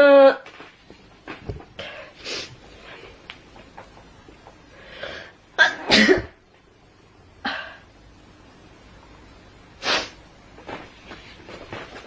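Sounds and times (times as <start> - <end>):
person sneezing: 5.6 - 6.4.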